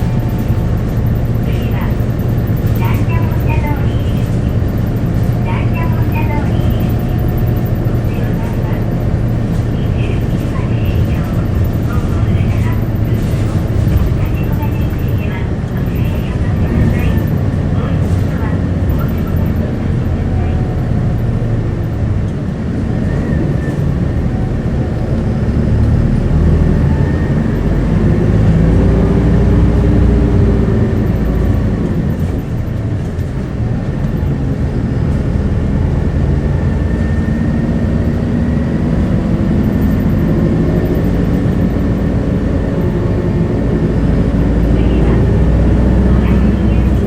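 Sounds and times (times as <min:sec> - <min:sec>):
bus diesel engine: 0:00.0 - 0:47.0
road and drivetrain rumble: 0:00.0 - 0:47.0.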